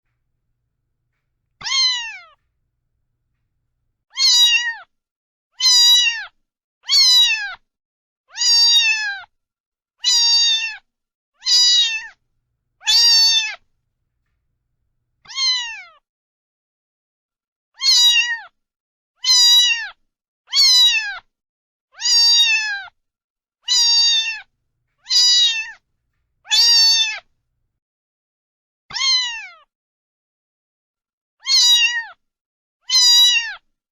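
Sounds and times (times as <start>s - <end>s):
cat meowing: 1.6s - 2.4s, 4.1s - 4.7s, 11.5s - 12.2s, 12.8s - 13.6s, 15.3s - 15.8s, 23.7s - 25.8s, 26.4s - 27.3s, 31.4s - 32.0s, 32.9s - 33.6s.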